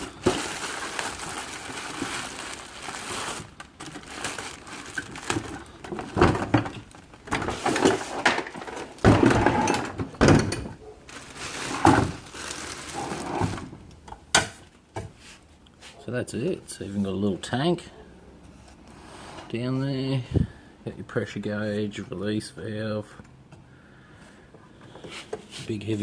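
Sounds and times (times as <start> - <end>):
air compressor handling knocks and thuds: 5.4 - 10.8.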